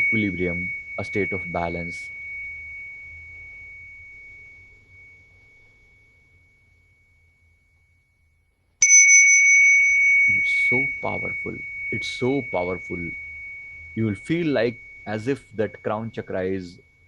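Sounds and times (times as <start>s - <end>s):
high bell ringing: 0.0s - 7.9s, 8.8s - 17.0s.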